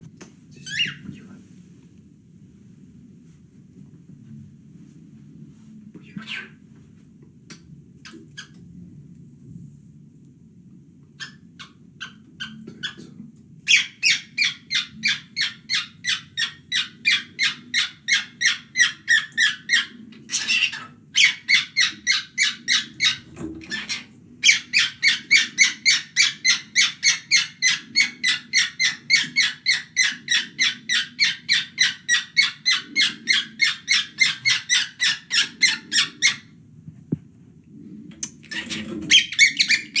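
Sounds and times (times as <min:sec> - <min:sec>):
cockatiel squawking: 0:00.6 - 0:01.0, 0:06.1 - 0:06.6, 0:13.7 - 0:36.4, 0:38.6 - 0:40.0.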